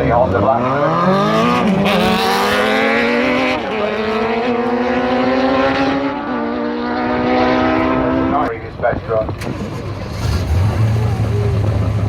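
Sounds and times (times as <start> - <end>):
motorcycle engine at full throttle: 1.4 - 12.0.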